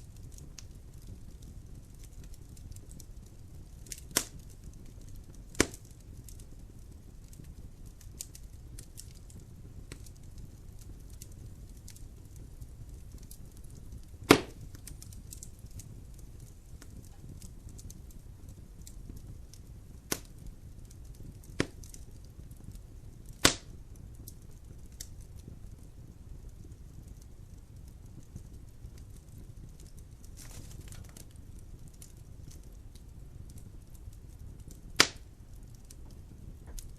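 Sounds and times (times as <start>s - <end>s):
fire crackling and popping: 0.0s - 36.9s
loud sharp pop: 14.3s - 14.6s, 23.4s - 23.7s, 35.0s - 35.2s.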